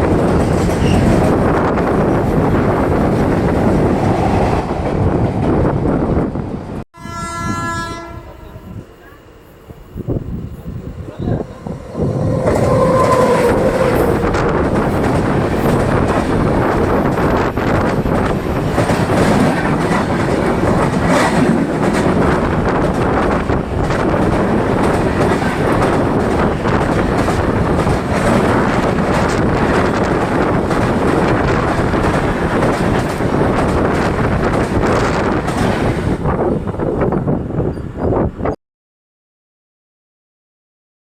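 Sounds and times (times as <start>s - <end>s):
train rumbling: 0.0s - 38.5s
wheels clattering over rail joints: 11.8s - 36.2s.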